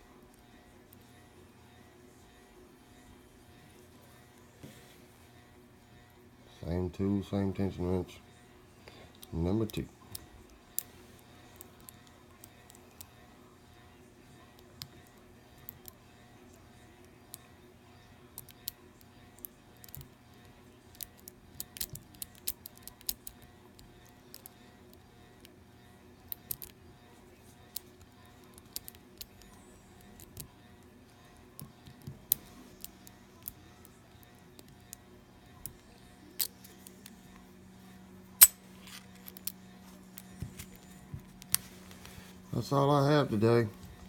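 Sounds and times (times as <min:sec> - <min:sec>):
faint steady hum: 0:00.0 - 0:44.0
lock pick metallic clicks: 0:38.4 - 0:39.6.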